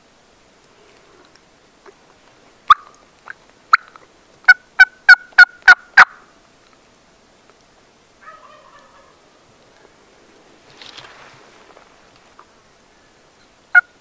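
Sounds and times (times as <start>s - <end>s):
turkey yelps: 8.2s - 9.3s.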